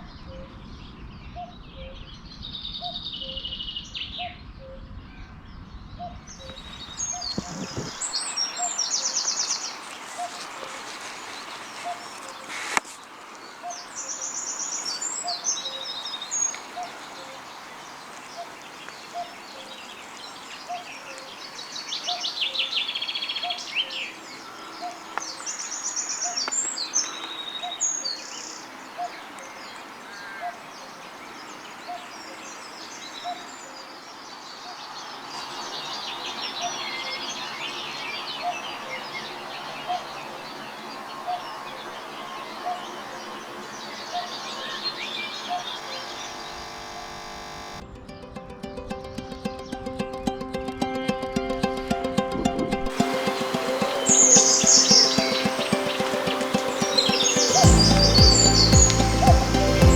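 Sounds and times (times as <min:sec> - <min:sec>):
songbirds trilling: 0:00.0 - 0:47.8, 0:53.0 - 0:59.9
cuckoo calling: 0:06.0 - 0:13.0, 0:13.6 - 0:29.5, 0:49.4 - 0:59.9.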